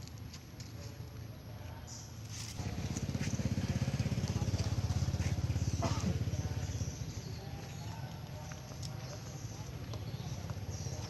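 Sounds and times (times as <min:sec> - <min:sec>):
small engine running: 0:02.6 - 0:07.9.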